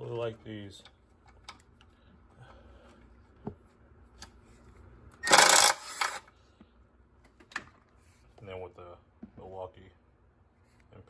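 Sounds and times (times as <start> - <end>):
hand ratchet ratcheting: 5.2 - 6.2.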